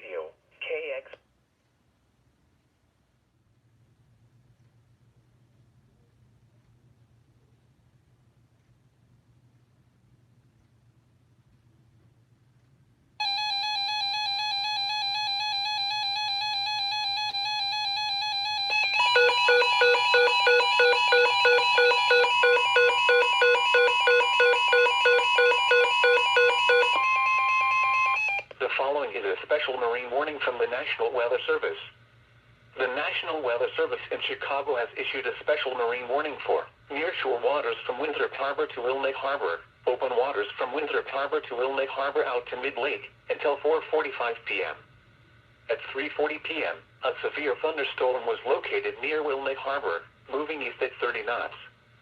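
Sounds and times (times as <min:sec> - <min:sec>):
steady buzzy alert tone: 0:13.2 - 0:28.4
rapid alternating beeps: 0:13.2 - 0:28.5.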